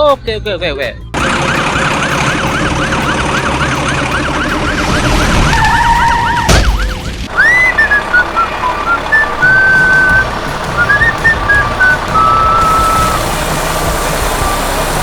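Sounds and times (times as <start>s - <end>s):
siren yelping: 1.2s - 10.2s
rising whistle: 3.6s - 13.2s, 14.3s - 15.0s
thump: 6.5s - 7.0s.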